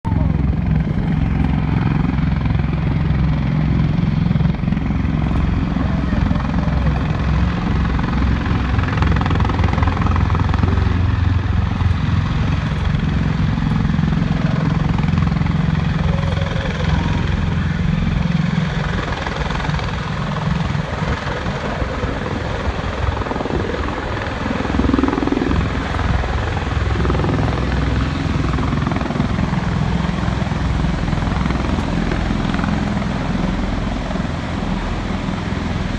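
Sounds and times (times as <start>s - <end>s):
loud low rotor drone: 0.0s - 35.9s.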